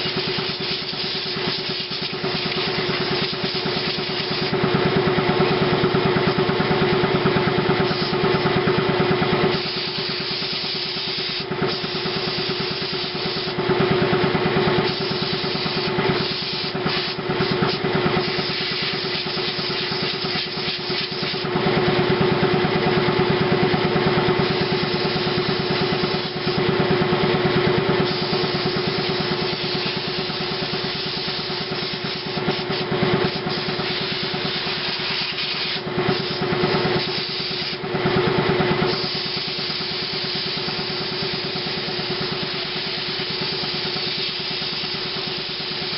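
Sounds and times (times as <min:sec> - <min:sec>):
air compressor pulsing hum: 0:00.0 - 0:45.9.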